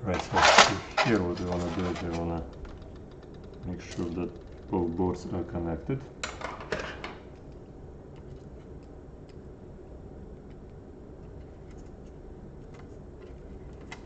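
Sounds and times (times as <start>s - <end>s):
steady low hum: 0.0s - 14.0s
screwdriver being handled: 0.1s - 4.8s
small laptop parts clicking: 1.5s - 5.0s.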